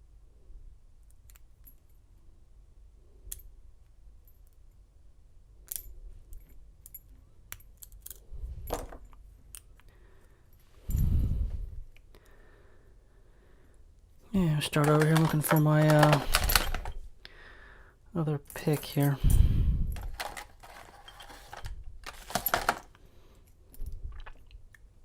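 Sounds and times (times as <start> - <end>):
handling thump and rattle: 8.5 - 9.2, 14.6 - 17.0, 18.6 - 23.0
lock pick metallic clicks: 14.6 - 17.0.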